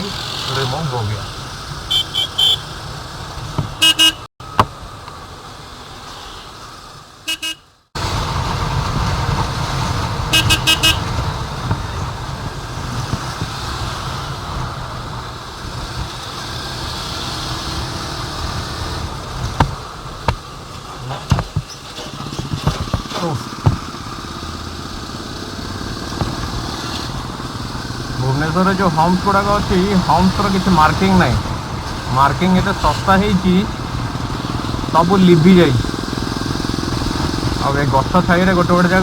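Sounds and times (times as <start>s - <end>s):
motorcycle engine rumble: 0.0s - 39.0s
vehicle horn beeps: 1.9s - 2.7s, 3.8s - 4.3s, 7.3s - 7.7s, 10.3s - 11.1s.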